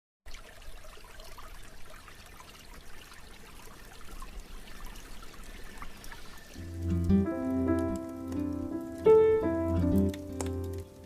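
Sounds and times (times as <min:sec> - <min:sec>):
campfire crackling and popping: 0:06.6 - 0:11.0.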